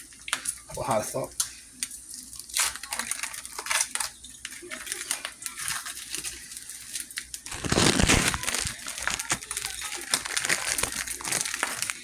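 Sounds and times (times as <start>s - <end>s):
crinkling and rustling: 2.6s - 12.0s.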